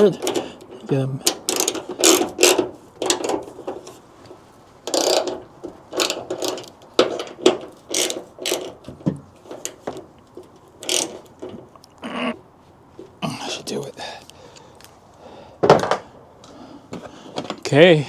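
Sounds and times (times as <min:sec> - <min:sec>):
metal mounts clicking and scraping: 0:00.0 - 0:12.0.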